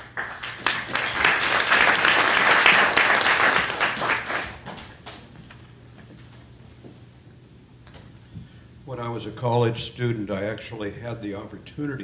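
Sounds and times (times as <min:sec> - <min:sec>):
audience applauding: 0:00.0 - 0:04.9.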